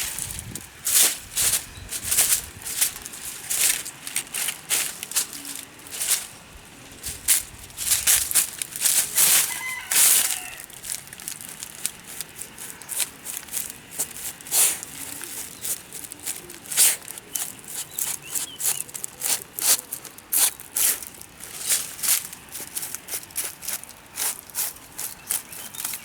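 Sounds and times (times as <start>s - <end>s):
dry leaf litter crackling: 0.0s - 26.0s
dog sniffing: 12.0s - 20.0s.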